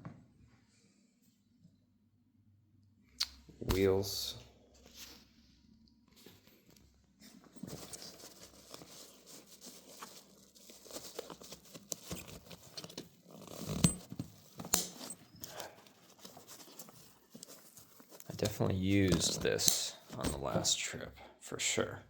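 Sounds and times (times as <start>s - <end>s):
rolling suitcase handling noise: 10.8s - 20.6s.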